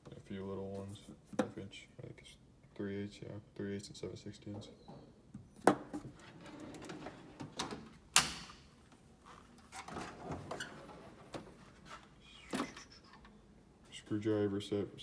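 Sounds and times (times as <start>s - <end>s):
steel drawers sliding: 6.1s - 8.6s, 9.7s - 11.9s.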